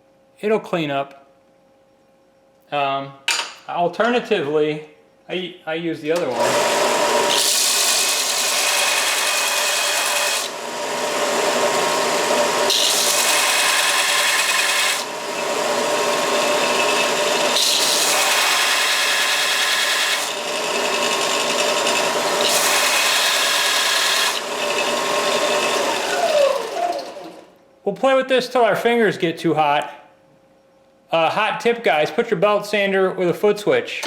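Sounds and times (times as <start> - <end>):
belt sander grinding steel: 6.3 - 27.3.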